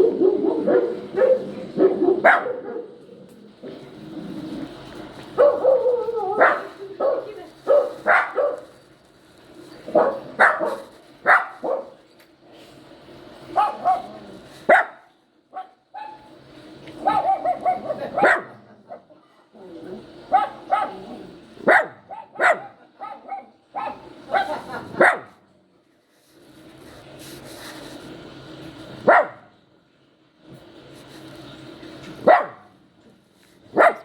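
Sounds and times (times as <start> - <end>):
puppy yelping and whining: 17.0 - 18.5.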